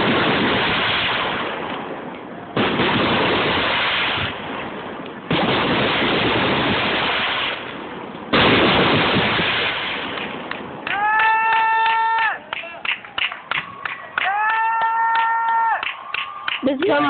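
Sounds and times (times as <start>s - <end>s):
fireworks bursting: 0.0s - 14.0s.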